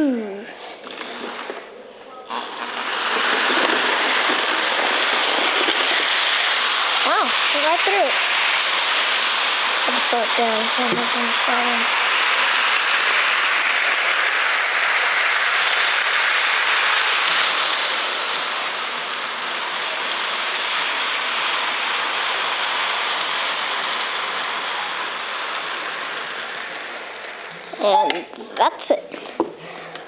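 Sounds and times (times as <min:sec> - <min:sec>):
toy train running on track: 0:02.3 - 0:28.2.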